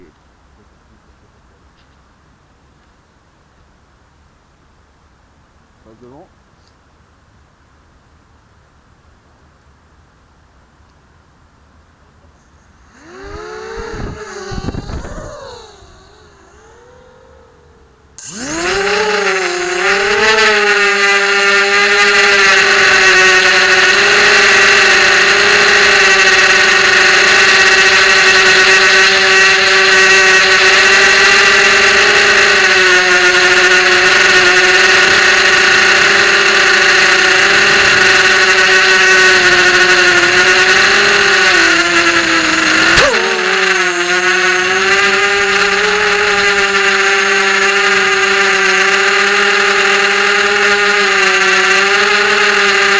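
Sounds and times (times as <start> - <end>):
quadcopter motors buzzing: 12.4 - 52.9.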